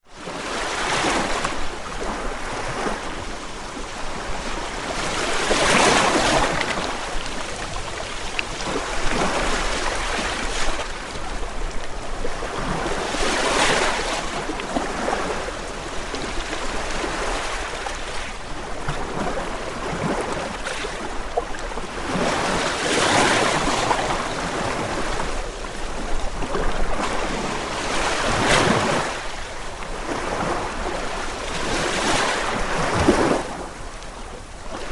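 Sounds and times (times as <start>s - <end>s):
ocean waves breaking: 0.0s - 34.9s.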